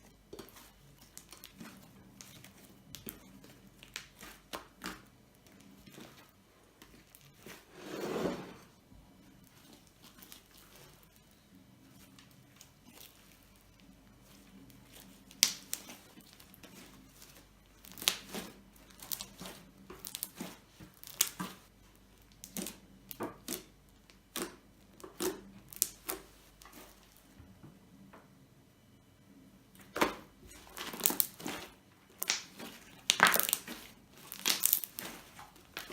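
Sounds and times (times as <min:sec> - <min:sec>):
slime popping and crackling: 0:14.9 - 0:21.6, 0:22.4 - 0:26.9, 0:29.9 - 0:35.9.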